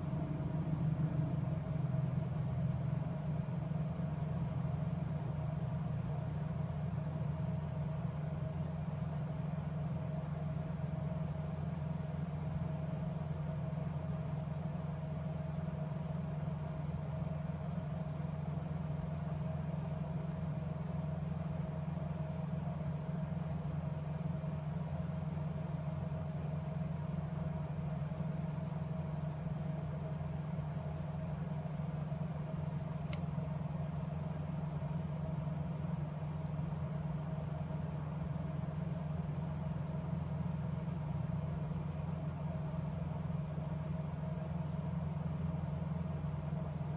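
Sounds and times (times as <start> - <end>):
low machine hum: 0.0 - 46.9.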